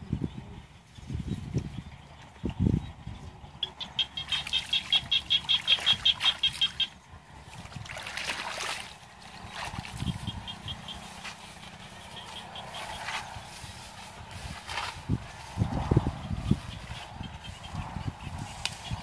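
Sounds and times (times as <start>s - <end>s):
bird calling in high notes: 3.6s - 7.0s.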